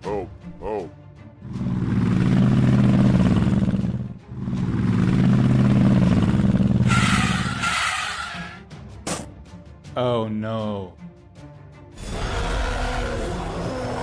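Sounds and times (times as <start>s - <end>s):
vehicle engine running: 1.4s - 7.6s.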